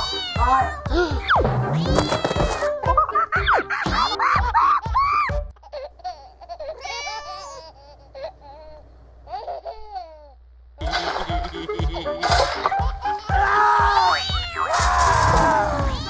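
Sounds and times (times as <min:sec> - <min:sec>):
light background music: 0:00.0 - 0:05.6, 0:10.8 - 0:16.0.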